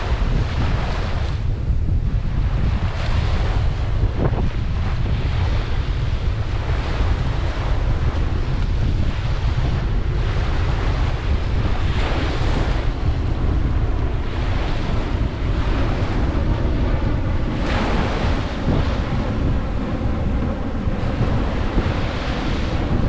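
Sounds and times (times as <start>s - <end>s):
ocean surf breaking on beach: 0.0s - 23.0s
wind rumble on microphone: 0.0s - 23.0s.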